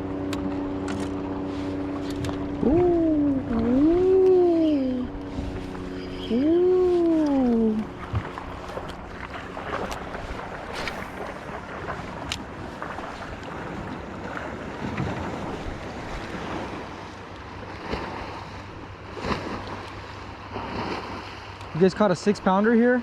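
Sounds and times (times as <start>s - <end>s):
water lapping around boat: 0.0s - 23.0s
wind buffeting microphone: 1.2s - 17.1s.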